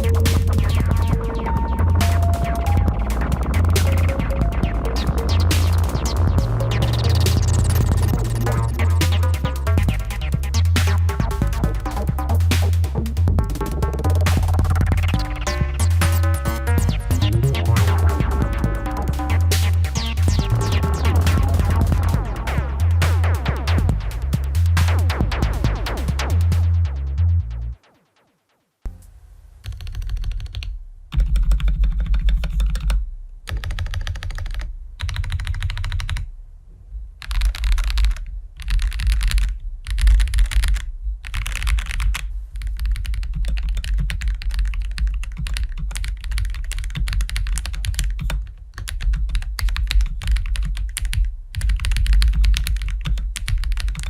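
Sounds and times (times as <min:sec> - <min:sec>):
electronic music: 0:00.0 - 0:30.0
fast typing on mechanical keyboard: 0:29.6 - 0:36.2, 0:37.2 - 0:54.0.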